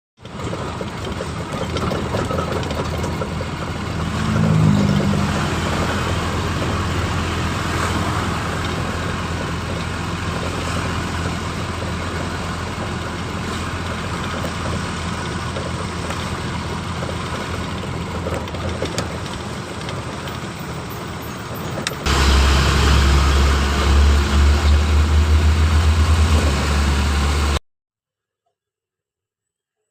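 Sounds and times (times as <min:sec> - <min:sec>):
truck engine running: 0:00.2 - 0:27.6
deep pulsing engine: 0:00.5 - 0:27.6.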